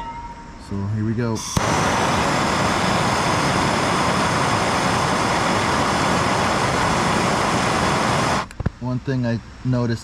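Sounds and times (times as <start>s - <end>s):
gas torch flame hissing: 1.5s - 8.6s.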